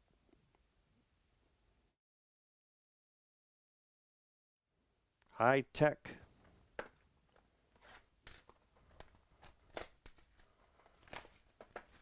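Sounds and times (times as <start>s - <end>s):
packaging tearing and crinkling: 7.8s - 12.0s.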